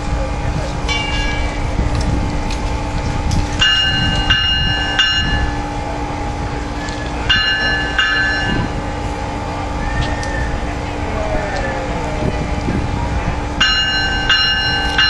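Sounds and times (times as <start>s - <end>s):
steady hum: 0.0s - 15.0s
train bell ringing: 0.8s - 1.8s, 3.5s - 11.0s, 13.4s - 15.0s.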